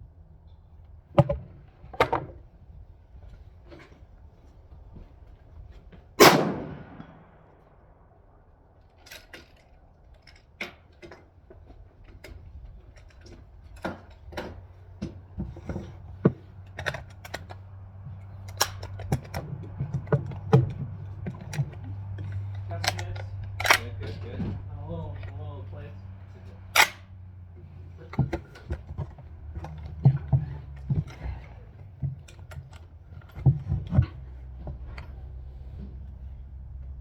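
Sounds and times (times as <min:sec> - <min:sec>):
rifle handling clicks and knocks: 0:00.8 - 0:07.1, 0:08.8 - 0:25.4, 0:26.1 - 0:36.9
suppressed rifle shot: 0:06.2 - 0:07.4.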